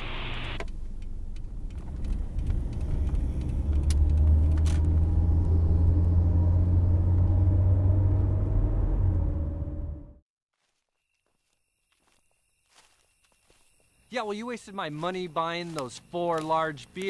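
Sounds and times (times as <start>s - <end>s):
car engine rumbling: 0.0s - 10.2s.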